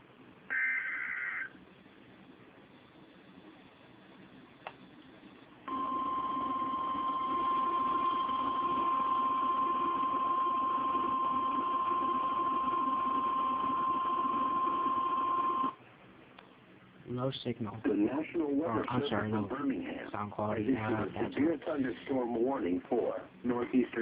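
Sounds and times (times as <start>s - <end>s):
radio hiss: 0.5s - 5.7s.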